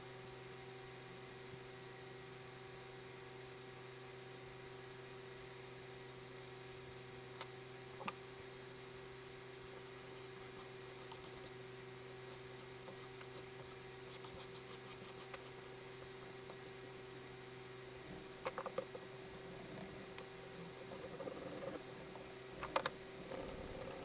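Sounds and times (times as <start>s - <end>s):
steady low hum: 6.8s - 24.0s.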